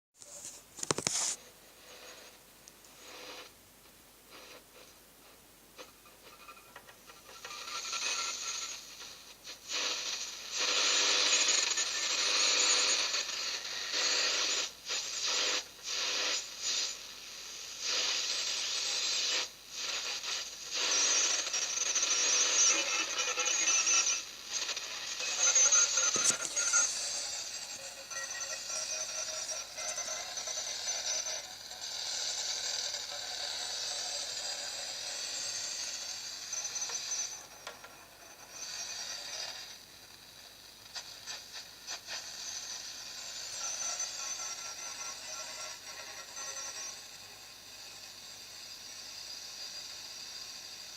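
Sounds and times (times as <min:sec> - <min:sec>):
radio data signal: 0:00.2 - 0:03.5, 0:05.8 - 0:50.0.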